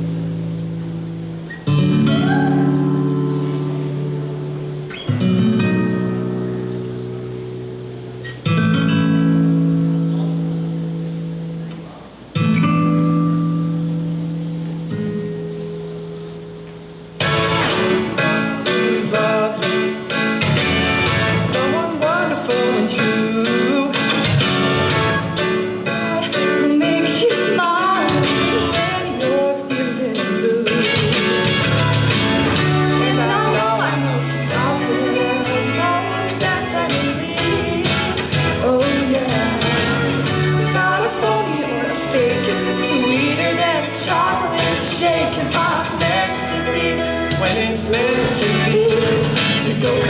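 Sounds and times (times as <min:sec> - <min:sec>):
person singing: 0:17.4 - 0:50.0.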